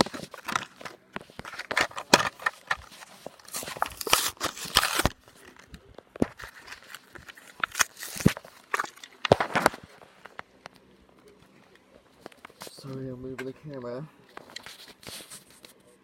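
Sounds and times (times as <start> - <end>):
blister pack crackling and tearing: 0.0 - 10.3.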